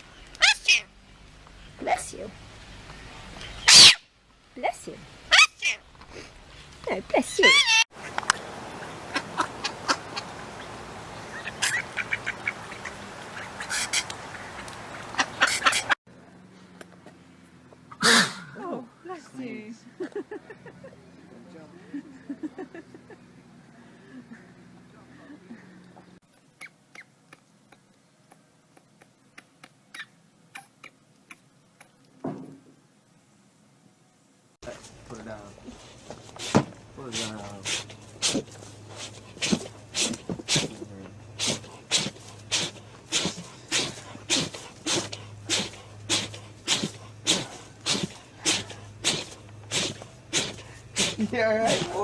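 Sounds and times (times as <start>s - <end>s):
steady background hiss: 0.0s - 52.0s
animal sneezing: 3.6s - 4.0s, 12.9s - 14.3s, 15.2s - 16.0s, 17.9s - 18.5s, 36.4s - 52.0s.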